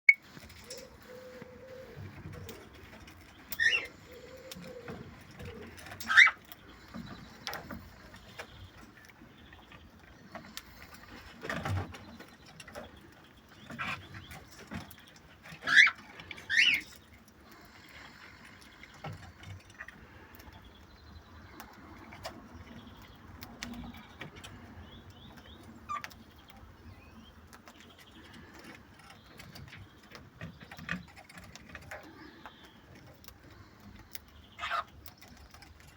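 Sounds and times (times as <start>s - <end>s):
cockatiels chirping: 3.5s - 6.4s, 15.6s - 17.0s, 34.4s - 35.0s.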